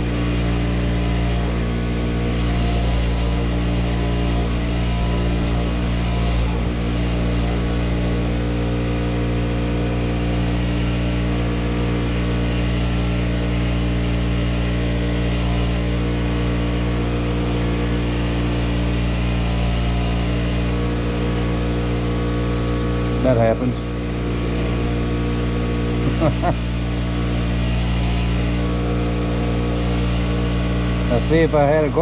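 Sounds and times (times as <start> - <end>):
motor humming: 0.0 - 32.0
wire bristles scrubbing metal: 28.5 - 32.0.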